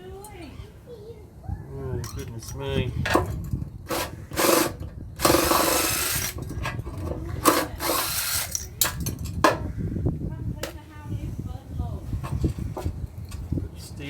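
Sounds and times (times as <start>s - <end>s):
power drill-driver undoing screws: 3.1s - 9.2s.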